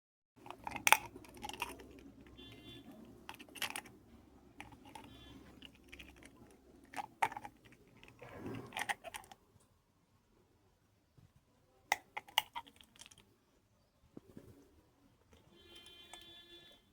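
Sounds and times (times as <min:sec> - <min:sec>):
pet gnawing walnut shell: 0:00.4 - 0:09.5, 0:11.9 - 0:13.3.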